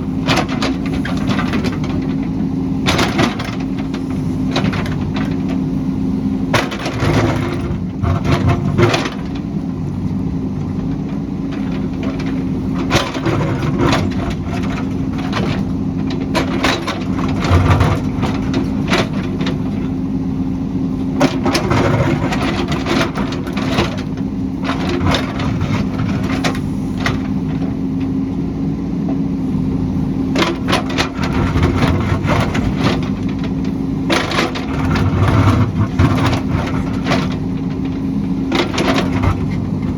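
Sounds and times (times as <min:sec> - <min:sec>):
diesel engine running under load: 0:00.0 - 0:39.9
bucket cracking earth and rock: 0:30.5 - 0:39.9.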